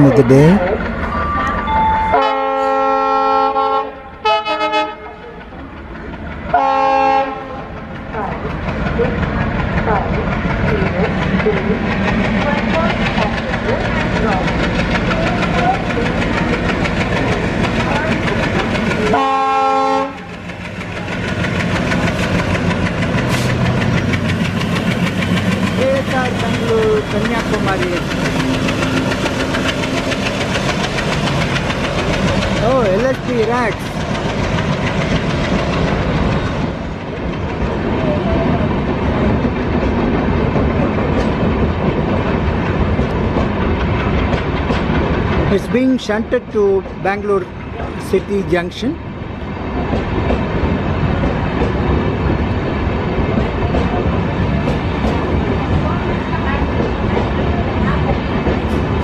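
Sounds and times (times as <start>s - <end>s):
train wheels rumbling and clattering: 0.0s - 59.0s
locomotive horn blast: 2.1s - 5.1s, 6.6s - 7.6s, 19.2s - 20.2s.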